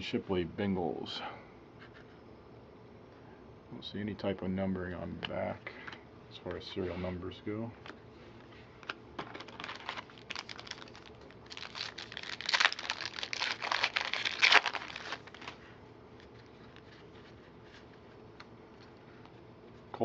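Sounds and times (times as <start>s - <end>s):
foil wrapper crinkling and tearing: 9.2s - 16.9s.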